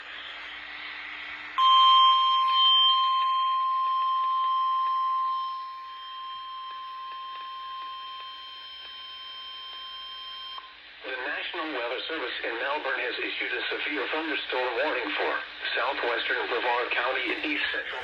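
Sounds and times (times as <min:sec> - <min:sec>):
radio hiss: 0:00.0 - 0:01.6, 0:10.7 - 0:18.0.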